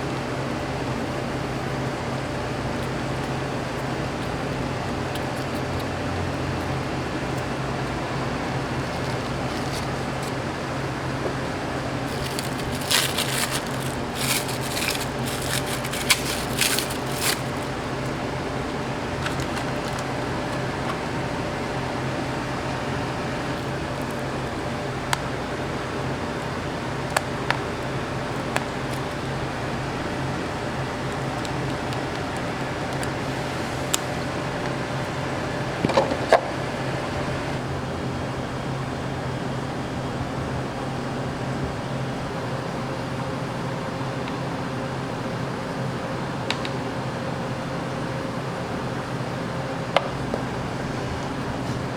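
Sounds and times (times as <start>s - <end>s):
kitchen machinery hum: 0.0s - 51.9s
crisp crunching and crackling: 6.8s - 21.1s.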